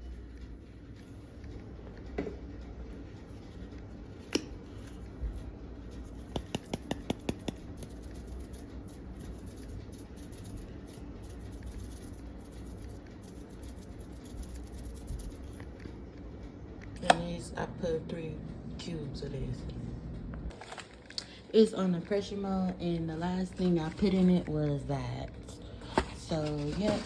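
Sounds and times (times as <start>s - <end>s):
kitchen handling noises: 25.8s - 27.0s.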